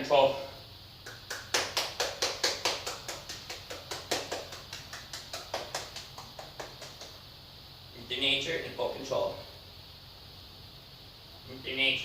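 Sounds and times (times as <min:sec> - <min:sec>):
rapid light sharp taps: 0:01.0 - 0:07.3.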